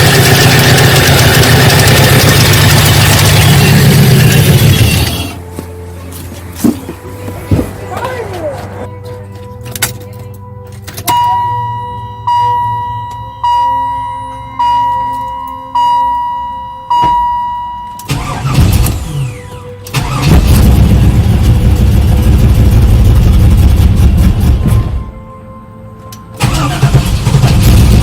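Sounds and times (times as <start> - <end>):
car engine running loudly: 0.0 - 5.4, 18.1 - 25.0, 26.4 - 28.0
starter cranking: 0.0 - 5.4
car warning chime: 11.1 - 18.5.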